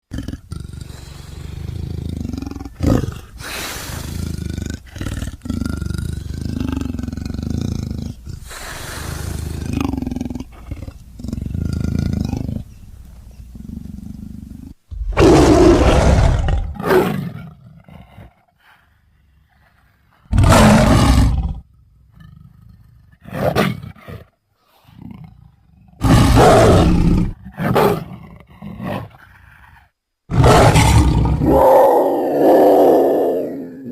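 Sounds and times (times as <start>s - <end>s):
big cat growling and snarling: 0.0s - 12.8s, 13.5s - 18.5s, 20.3s - 33.9s
big cat roaring: 13.6s - 18.4s, 20.3s - 24.3s, 24.9s - 29.3s, 30.3s - 33.9s.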